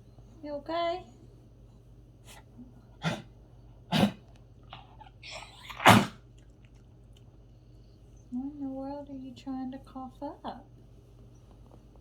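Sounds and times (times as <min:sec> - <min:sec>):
pet coughing harshly: 0:03.0 - 0:03.3, 0:03.9 - 0:04.2, 0:05.7 - 0:06.2.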